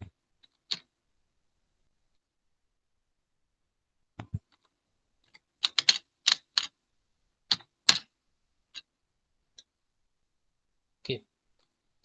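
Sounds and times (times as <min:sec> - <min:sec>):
keyboard keys clicking: 0:05.6 - 0:06.7.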